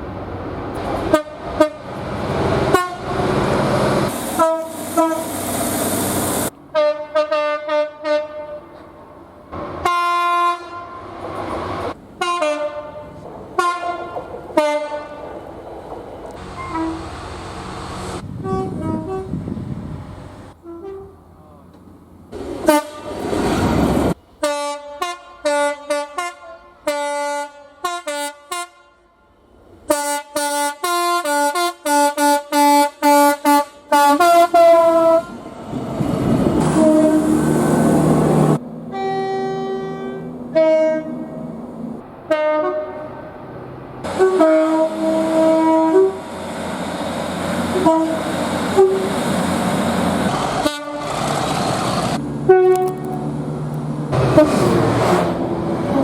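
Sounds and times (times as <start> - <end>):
rushing noise of moving trains: 0.0 - 56.0
multi-tone train horn blasts: 1.1 - 1.9, 2.7 - 3.2, 4.3 - 5.4, 6.7 - 8.8, 9.8 - 11.1, 12.2 - 15.2, 16.6 - 17.2, 18.3 - 19.5, 20.6 - 21.2, 22.6 - 23.3, 24.4 - 35.4, 36.6 - 37.9, 38.9 - 41.4, 42.3 - 43.2, 44.1 - 46.3, 47.7 - 49.1, 50.6 - 51.2, 52.4 - 53.2, 54.2 - 54.8.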